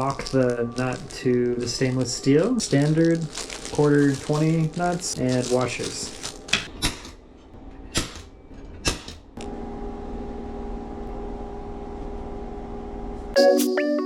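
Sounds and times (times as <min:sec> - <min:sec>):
bagged hardware clicking: 0:00.0 - 0:08.3
steady hum: 0:00.0 - 0:13.4.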